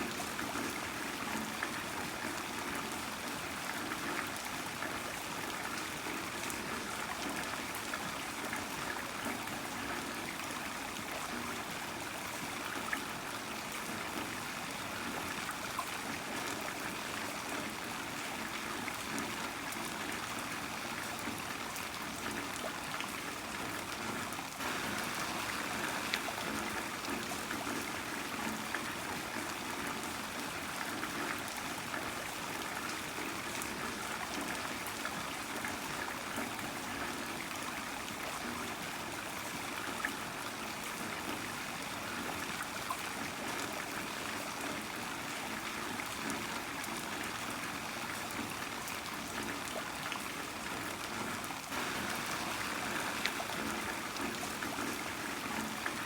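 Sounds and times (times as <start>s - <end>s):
water trickling: 21.2s - 38.8s, 48.3s - 56.0s
heavy rain falling: 24.6s - 28.4s, 51.7s - 55.6s.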